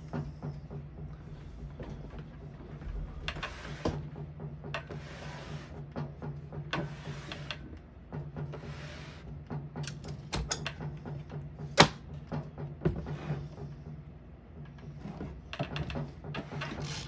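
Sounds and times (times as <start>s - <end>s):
typewriter sliding and rasping: 6.8s - 7.7s, 16.4s - 17.0s.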